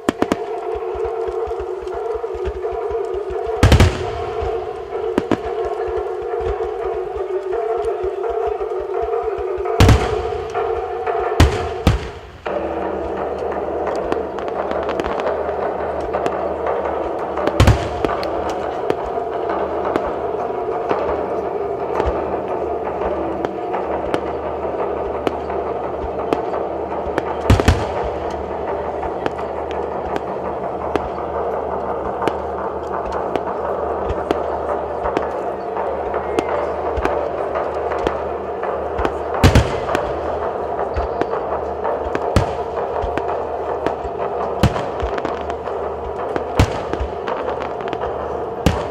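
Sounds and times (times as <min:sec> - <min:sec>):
fireworks popping and crackling: 0:00.0 - 0:48.9
music: 0:00.0 - 0:48.9
rumbling background noise: 0:00.0 - 0:48.9
distant firework pops: 0:38.9 - 0:48.9.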